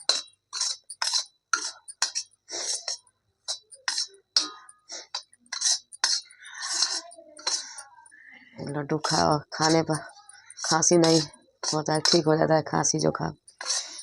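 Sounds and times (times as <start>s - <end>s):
spoon scraping a pan: 0.0s - 14.0s.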